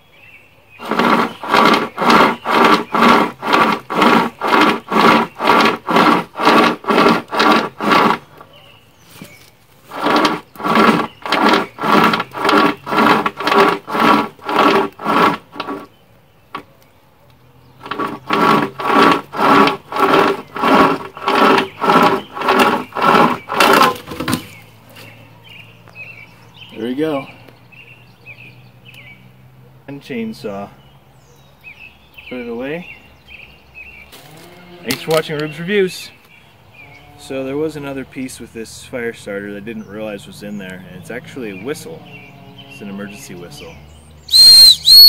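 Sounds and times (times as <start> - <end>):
saw chain rasping through wood: 0.8 - 8.6, 9.8 - 16.7, 17.8 - 24.6.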